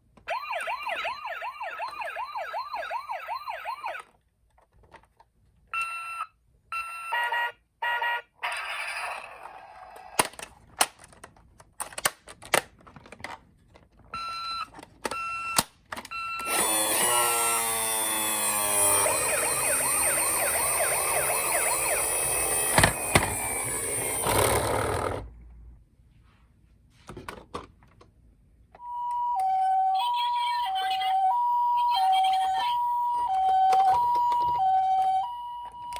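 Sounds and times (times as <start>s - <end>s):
toy sirens: 0.2s - 4.2s, 5.7s - 10.2s, 14.2s - 24.8s, 28.8s - 35.9s
plastic clicks: 10.2s - 14.0s.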